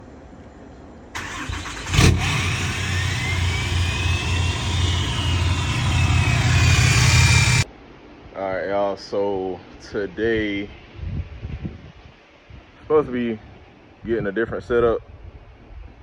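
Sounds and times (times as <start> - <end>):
turbo whine: 1.2 - 7.6
diesel engine starting and running: 1.2 - 7.7.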